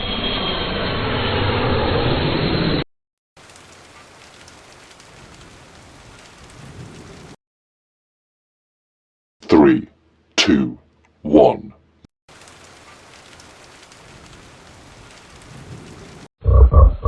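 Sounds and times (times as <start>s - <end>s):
steady rain: 3.4s - 7.4s, 12.3s - 16.3s
thunder rumble: 3.4s - 7.4s, 12.6s - 17.0s.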